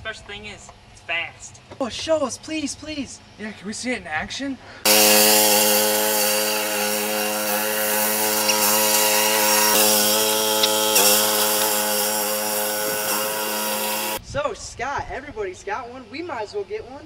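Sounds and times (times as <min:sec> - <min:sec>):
hissing noise: 0:04.9 - 0:14.2
lawn mower engine running: 0:04.9 - 0:14.2.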